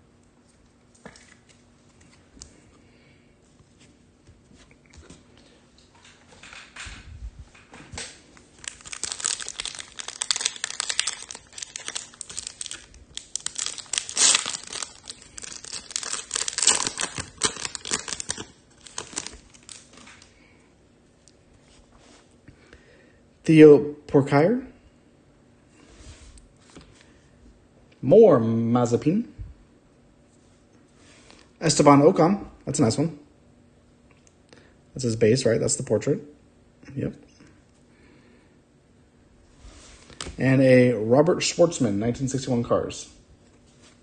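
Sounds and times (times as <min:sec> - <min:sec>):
foil wrapper crinkling: 0:08.0 - 0:20.3.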